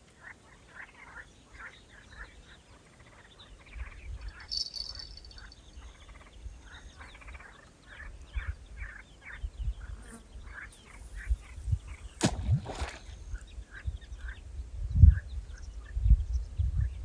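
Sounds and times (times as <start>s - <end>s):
small bird chirping: 0.7s - 12.0s
wind rumble on microphone: 3.6s - 17.0s.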